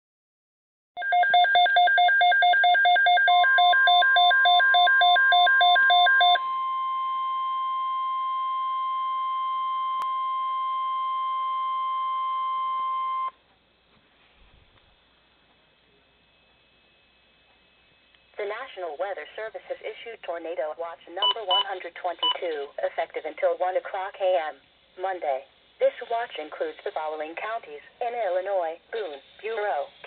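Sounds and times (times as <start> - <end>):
steady warning alarm tone: 1.0 - 13.4
weather radio rapid beeping: 21.2 - 22.9.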